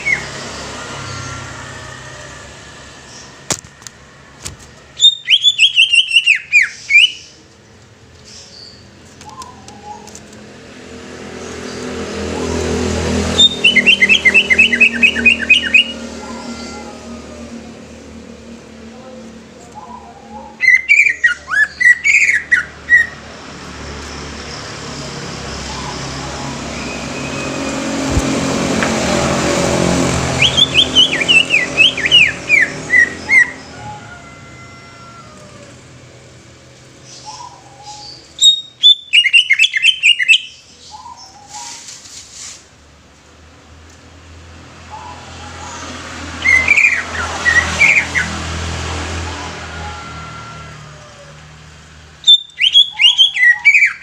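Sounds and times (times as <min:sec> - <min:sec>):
bird singing whistled notes: 0:05.0 - 0:07.4, 0:13.4 - 0:16.0, 0:30.4 - 0:33.5, 0:37.2 - 0:41.8, 0:52.2 - 0:54.0
rushing noise: 0:23.7 - 0:35.3.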